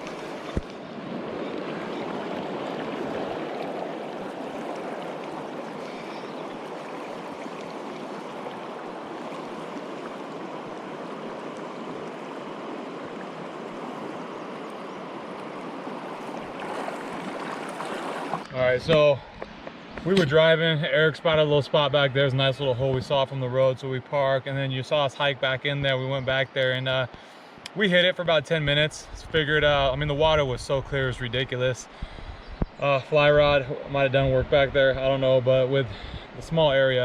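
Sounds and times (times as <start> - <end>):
river rushing: 0.0 - 18.5.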